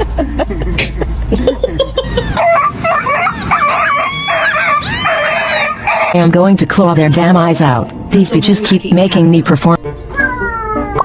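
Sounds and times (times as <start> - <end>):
pet whining cries: 2.0 - 6.2, 10.1 - 11.0.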